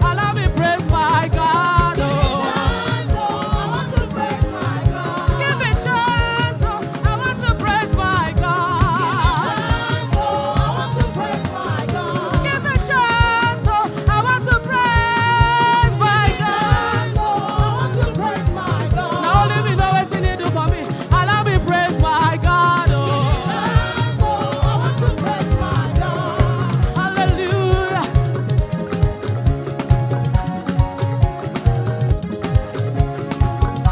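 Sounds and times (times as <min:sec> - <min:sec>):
band with steady drum beat: 0:00.0 - 0:33.9
gospel choir singing: 0:00.0 - 0:33.9.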